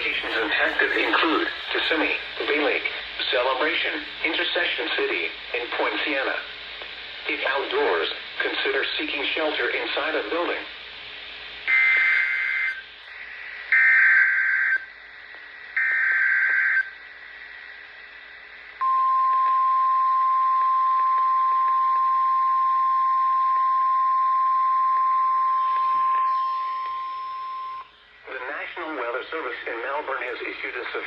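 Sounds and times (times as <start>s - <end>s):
steady warning alarm tone: 0.0s - 2.4s, 11.7s - 12.8s, 15.8s - 16.9s, 18.8s - 27.9s.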